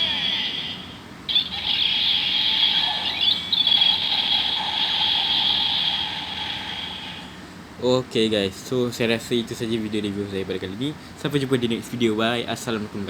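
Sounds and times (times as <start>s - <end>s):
toy belt electronic sound effects: 0.0s - 7.4s.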